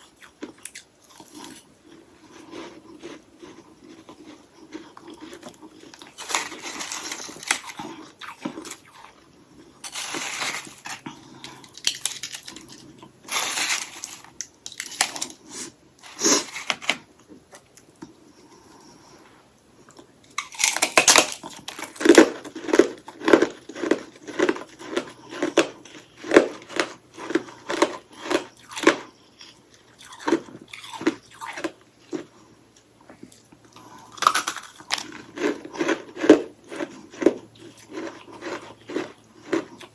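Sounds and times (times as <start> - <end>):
chewing ice: 0.0 - 19.1, 19.8 - 32.5, 33.2 - 39.9
ice being bitten and crunched: 2.5 - 9.1, 9.8 - 17.0, 20.4 - 26.0, 34.1 - 39.9.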